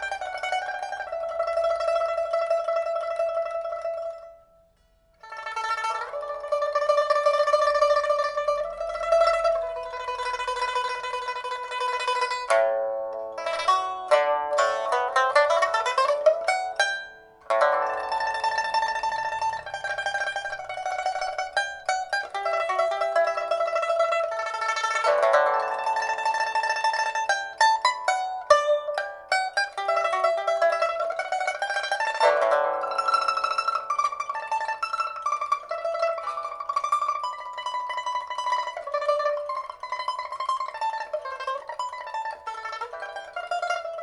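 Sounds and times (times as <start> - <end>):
plucked lute tremolo melody: 0.0 - 44.0.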